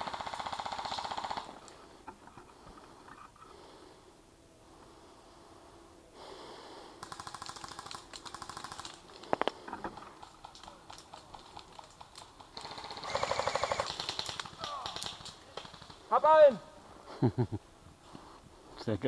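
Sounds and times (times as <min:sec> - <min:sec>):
airsoft gun automatic bursts: 0:00.0 - 0:01.7, 0:07.0 - 0:09.4, 0:10.2 - 0:16.2.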